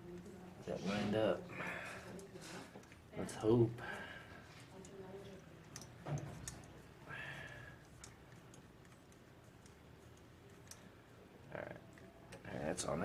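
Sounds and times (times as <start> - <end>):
hands clicking and tapping parts: 5.6 - 10.9.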